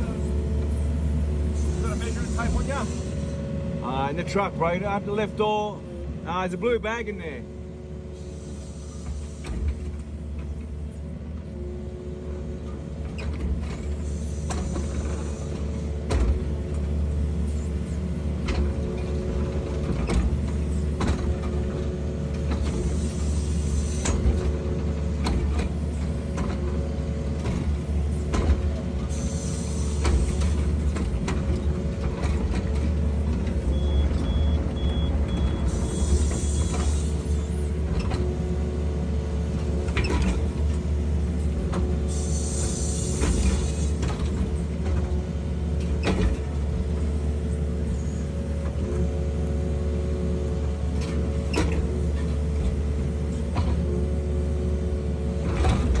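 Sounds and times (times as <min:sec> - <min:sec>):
diesel engine running: 0:00.0 - 0:56.0
machine knocks and clanks: 0:23.9 - 0:29.2, 0:39.4 - 0:42.0, 0:43.2 - 0:47.2.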